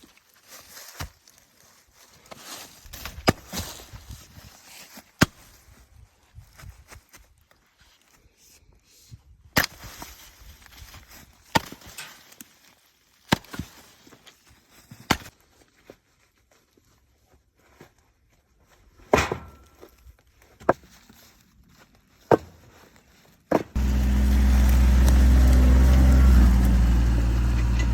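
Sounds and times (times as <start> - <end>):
axe chopping wood: 3.0 - 3.6, 5.2 - 5.4, 9.6 - 9.9, 11.5 - 11.9, 13.3 - 13.7, 15.1 - 15.3, 19.1 - 19.8, 22.3 - 22.6, 23.5 - 26.4.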